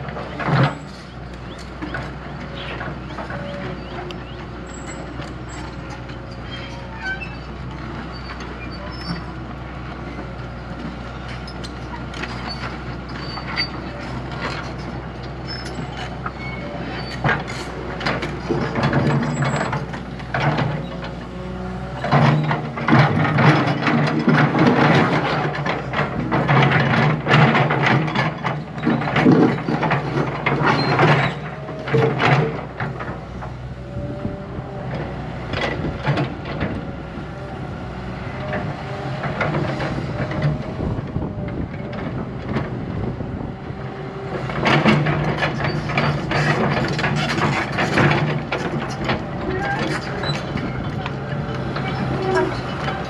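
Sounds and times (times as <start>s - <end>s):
diesel engine running: 0.0s - 53.0s
metal clanking and knocking: 22.0s - 34.0s, 44.4s - 53.0s.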